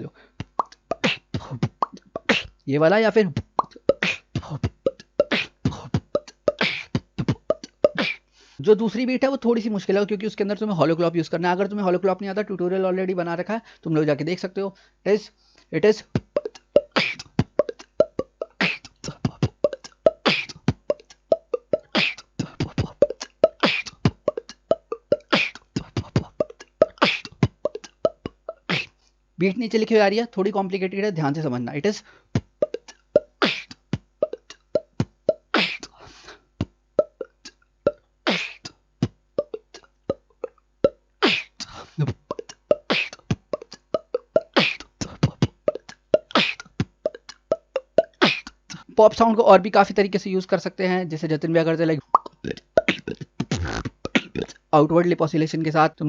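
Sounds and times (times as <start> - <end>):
beatbox hissing snare: 0.0 - 2.6, 3.3 - 8.6, 16.0 - 29.0, 32.3 - 40.2, 40.9 - 49.0, 52.1 - 54.6
beatbox lip pops and clicks: 0.0 - 2.7, 3.3 - 8.3, 15.6 - 29.1, 32.3 - 49.3, 52.0 - 54.7.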